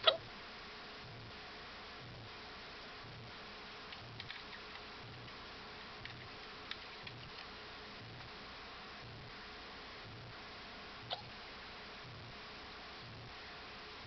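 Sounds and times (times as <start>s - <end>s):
faint hiccups: 0.0s - 0.2s, 11.1s - 11.3s.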